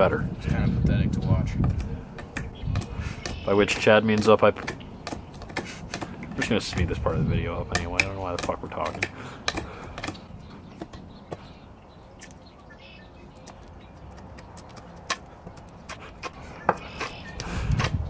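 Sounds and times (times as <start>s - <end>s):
knife whittling wood: 1.6s - 10.2s, 13.5s - 18.0s.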